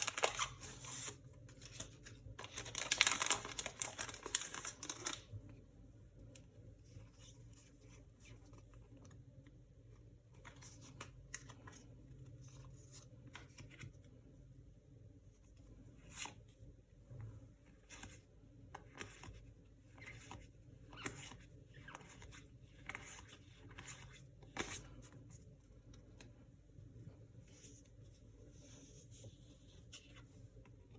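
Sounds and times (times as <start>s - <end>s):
cards and packaging rustling: 0.0s - 5.3s.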